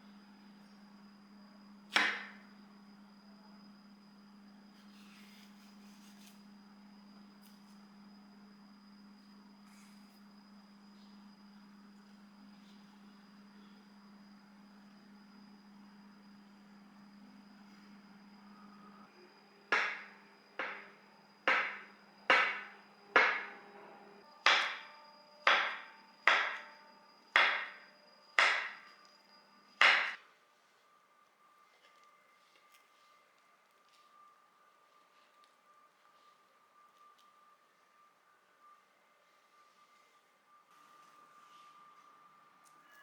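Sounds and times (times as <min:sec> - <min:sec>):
low hum: 0:07.9 - 0:29.8
sharp knocks: 0:19.7 - 0:20.9, 0:21.5 - 0:23.5, 0:25.5 - 0:26.7, 0:27.4 - 0:27.8, 0:28.4 - 0:28.8, 0:29.8 - 0:30.2.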